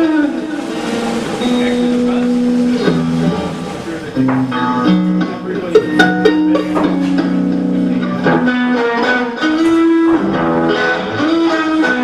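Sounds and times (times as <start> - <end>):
bass guitar: 0.0 - 12.0
electric guitar bending notes: 0.0 - 12.0.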